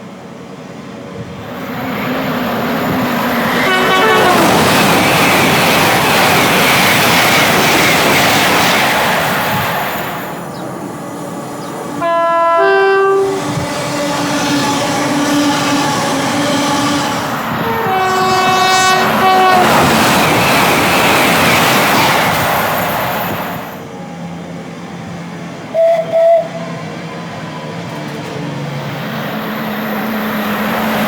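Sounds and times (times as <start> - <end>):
train passing rushing: 0.0 - 31.0
two-tone train horn: 3.5 - 4.8, 12.0 - 19.9, 25.7 - 26.8.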